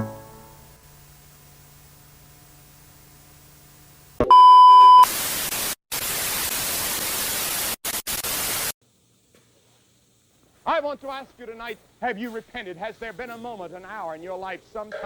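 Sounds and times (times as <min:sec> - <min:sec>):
hiss-like static: 0:00.1 - 0:04.2, 0:05.0 - 0:15.0
loud electronic beep: 0:04.2 - 0:05.0.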